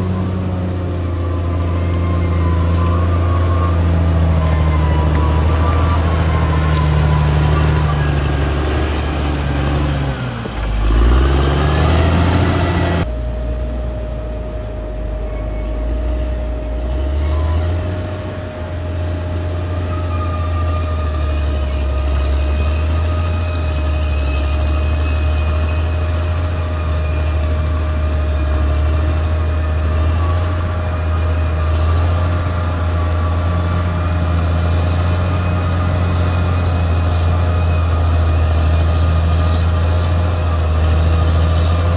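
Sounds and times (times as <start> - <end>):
bulldozer diesel engine running: 0.0 - 41.9
heavy hum with high whine: 13.0 - 20.8.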